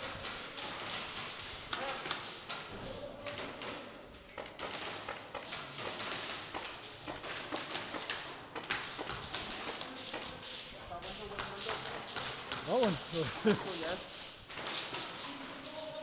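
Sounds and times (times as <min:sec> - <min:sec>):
airsoft guns firing: 0:03.3 - 0:15.9
pellets striking hard surfaces: 0:04.5 - 0:16.0.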